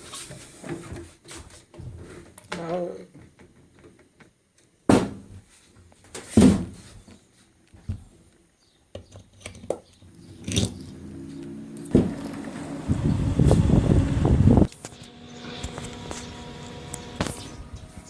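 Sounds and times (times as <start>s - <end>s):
knocks and thumps of handling: 6.1s - 7.2s
low mechanical hum: 10.0s - 18.0s.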